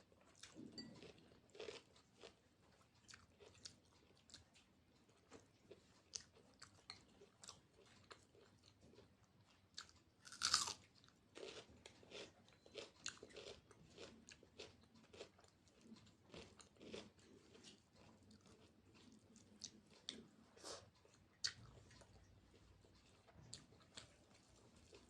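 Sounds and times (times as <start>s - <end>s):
person chewing food: 0.0s - 25.0s
loud crunchy bite: 10.3s - 10.8s.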